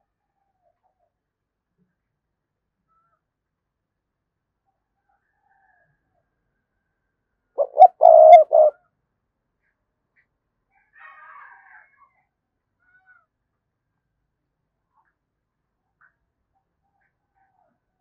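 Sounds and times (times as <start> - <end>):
dove cooing: 7.6 - 8.7.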